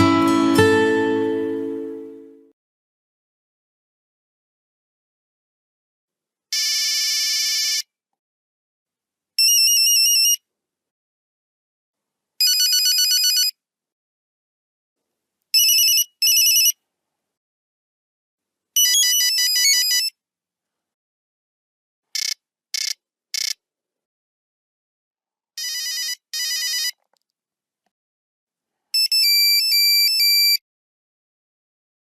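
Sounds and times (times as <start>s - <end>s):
monophonic phone ringtone beeps: 12.4s - 13.5s, 15.6s - 16.8s, 18.8s - 20.1s, 25.6s - 27.0s.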